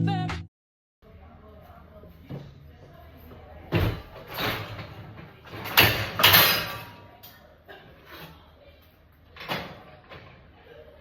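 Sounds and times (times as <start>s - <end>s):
dishes clattering: 3.7s - 8.4s
dishwasher racks sliding: 3.9s - 7.0s.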